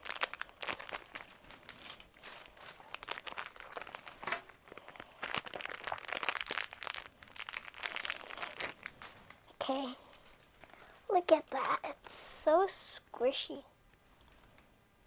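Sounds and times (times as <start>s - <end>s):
plastic packaging crinkling: 0.0s - 11.8s.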